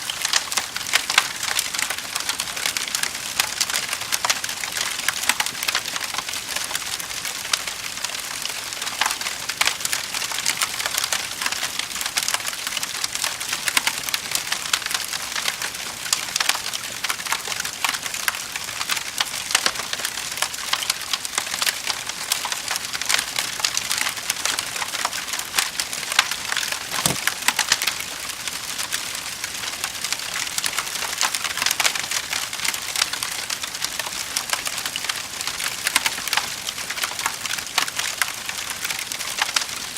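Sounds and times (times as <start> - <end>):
wood fire crackling and popping: 14.8 - 39.7.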